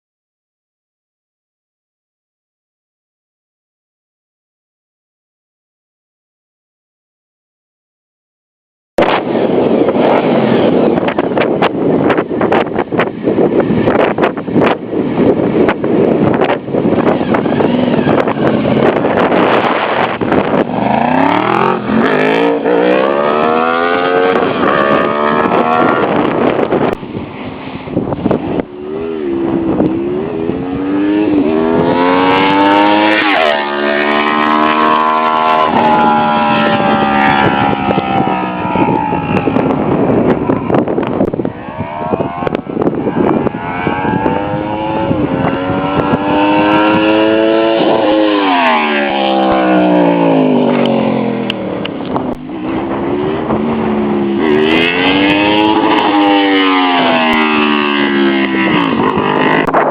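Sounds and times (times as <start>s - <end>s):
motorcycle engine revving: 13.8s - 41.6s, 42.2s - 59.9s.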